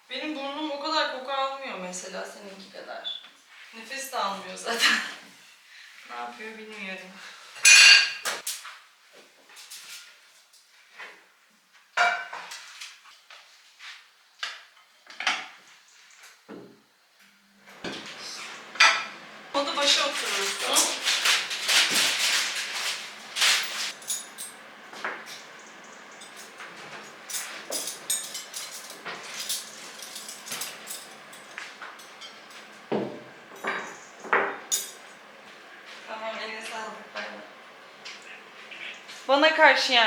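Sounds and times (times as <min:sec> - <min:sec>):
dishes and utensils clinking: 0:07.6 - 0:08.4, 0:20.1 - 0:25.6, 0:26.2 - 0:35.1.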